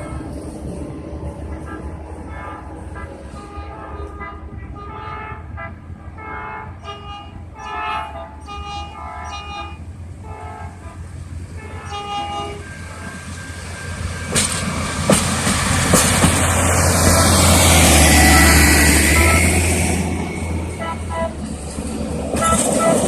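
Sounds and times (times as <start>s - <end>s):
short horn blasts: 1.6s - 11.0s, 11.6s - 12.7s, 17.0s - 21.5s, 22.3s - 23.0s
rail vehicle wheels clicking over joints: 11.2s - 18.1s, 20.0s - 23.0s.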